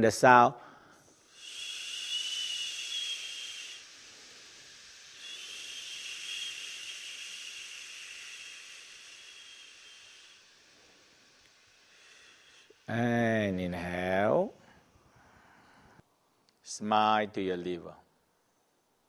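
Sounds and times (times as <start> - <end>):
person exhaling hissing shhh: 0.6 - 12.9.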